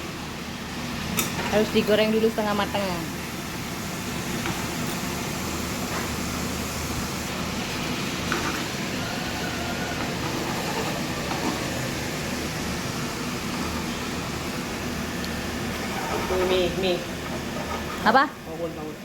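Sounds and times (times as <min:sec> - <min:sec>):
tofu sizzling in hot oil: 0:00.0 - 0:16.0.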